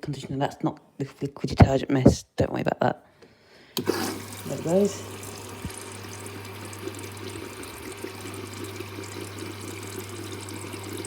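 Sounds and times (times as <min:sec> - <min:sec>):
water running: 0:03.8 - 0:11.0.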